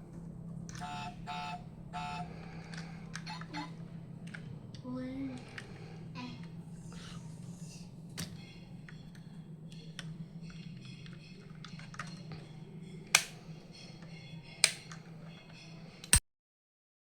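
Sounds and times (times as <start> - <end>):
steady low hum: 0.0 - 16.2
toy and packaging handling clicks: 2.6 - 3.6, 13.1 - 13.4, 14.6 - 15.1.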